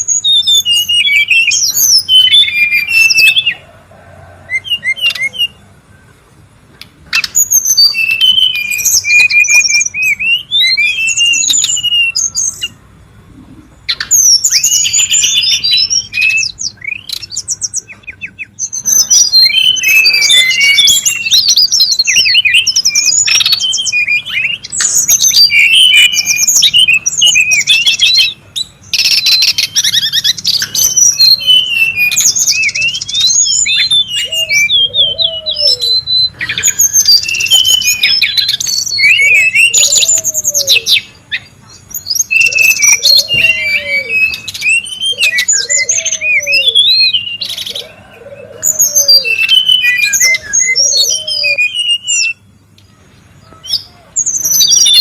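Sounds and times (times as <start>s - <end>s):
bird chirps and trills: 0.0s - 55.0s.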